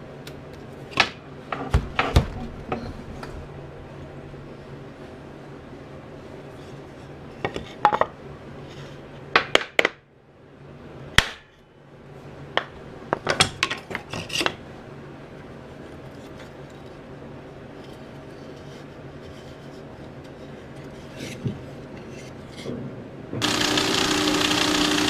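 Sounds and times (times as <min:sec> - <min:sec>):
steady low hum: 0:00.0 - 0:09.4.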